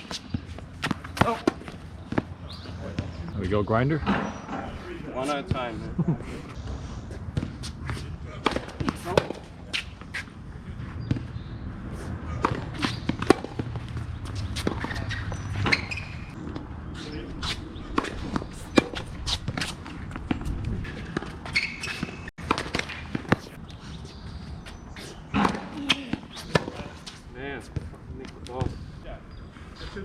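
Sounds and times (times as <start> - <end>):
racket hitting tennis ball: 0.0 - 2.3, 7.3 - 10.3, 12.4 - 16.6, 17.4 - 23.6, 25.3 - 27.1
footsteps on a tennis court: 5.2 - 28.8
ball bouncing: 12.4 - 16.6.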